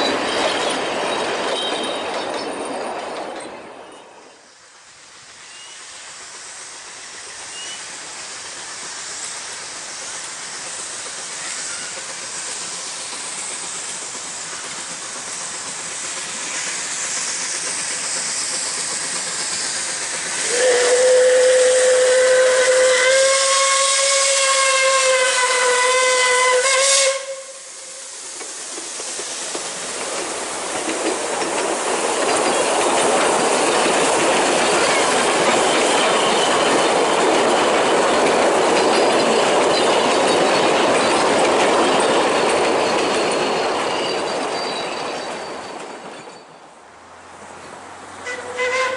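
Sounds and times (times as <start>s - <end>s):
steam locomotive running: 0.0s - 48.9s
steam whistle blast: 20.4s - 28.1s, 48.2s - 48.9s.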